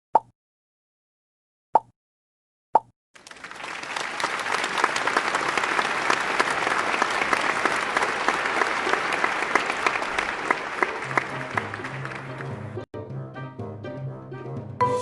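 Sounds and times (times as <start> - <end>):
crowd applause: 3.2 - 12.8.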